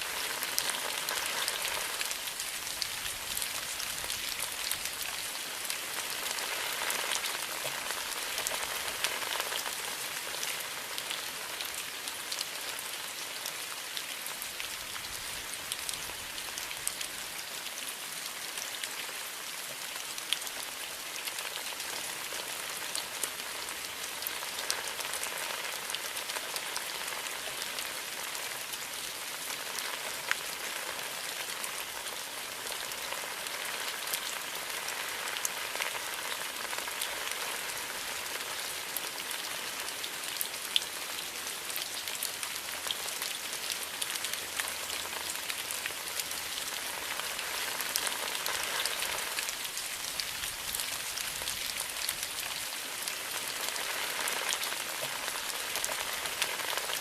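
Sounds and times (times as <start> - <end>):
raindrops pattering: 0.0 - 57.0
steady rain hiss: 0.0 - 57.0.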